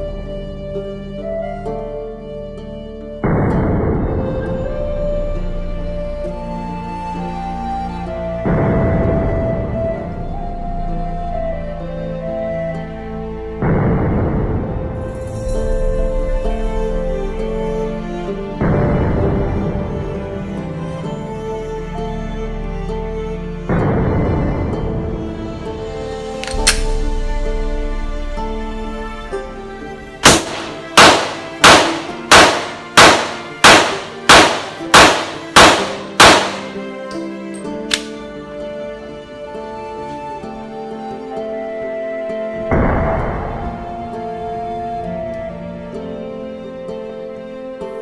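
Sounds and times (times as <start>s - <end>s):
background music sustained tones: 0.0s - 48.0s
handgun shots: 26.4s - 26.9s, 30.2s - 37.2s, 37.9s - 38.2s
slowed gunshot boom: 30.2s - 36.8s.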